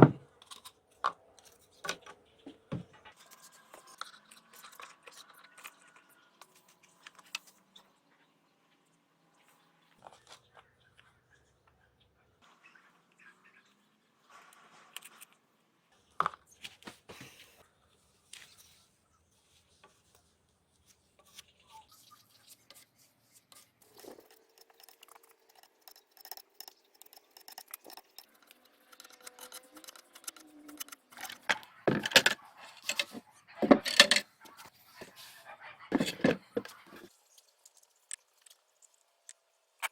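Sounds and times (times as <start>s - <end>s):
hard objects clinking and knocking: 24.1s - 34.3s, 35.9s - 37.1s.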